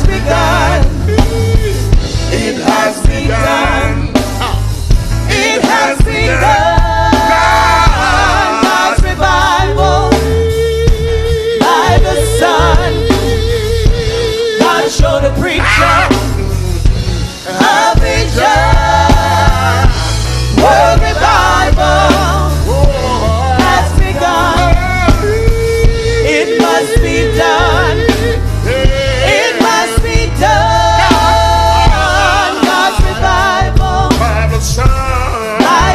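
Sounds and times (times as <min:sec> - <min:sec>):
gospel singing over heavy bass: 0:00.0 - 0:35.9.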